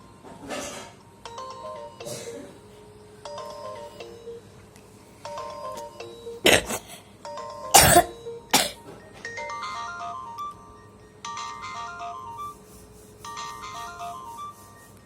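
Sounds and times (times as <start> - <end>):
phone ringtone melody: 1.2 - 2.2, 3.2 - 4.6, 5.2 - 6.4, 7.2 - 15.0.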